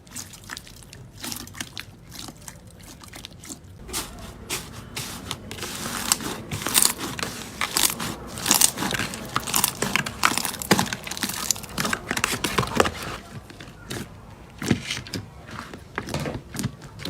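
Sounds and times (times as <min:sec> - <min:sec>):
slime crackling and popping: 0:00.1 - 0:15.3.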